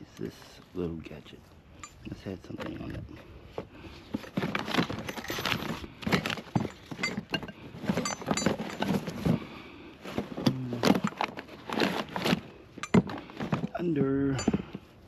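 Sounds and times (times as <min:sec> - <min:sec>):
junk being rummaged through: 0:01.9 - 0:15.0.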